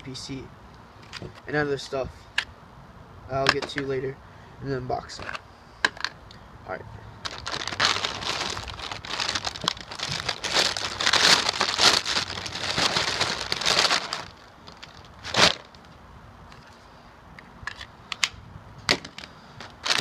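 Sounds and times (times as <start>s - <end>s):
plastic packaging crinkling: 7.2s - 15.8s, 19.6s - 20.0s.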